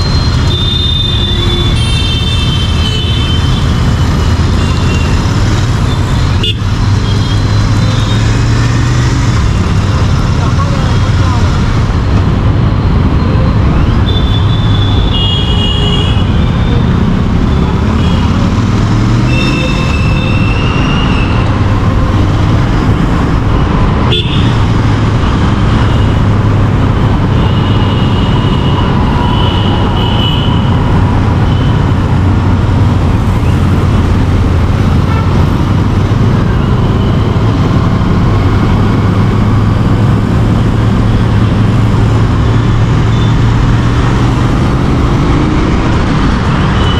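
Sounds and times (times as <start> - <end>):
vehicle horns tooting: 0.3 - 3.6, 24.1 - 24.6.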